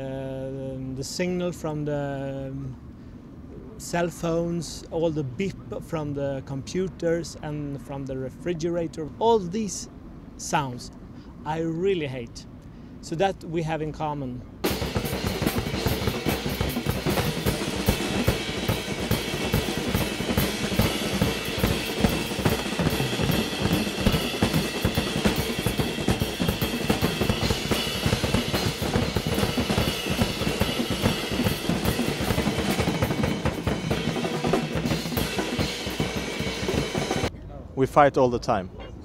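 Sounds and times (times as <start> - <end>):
bass drum and snare rolls: 14.6 - 37.3.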